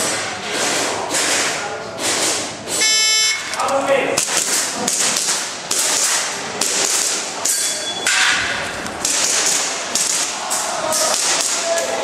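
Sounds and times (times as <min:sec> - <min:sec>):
airsoft pistol shots: 0:09.0 - 0:10.3.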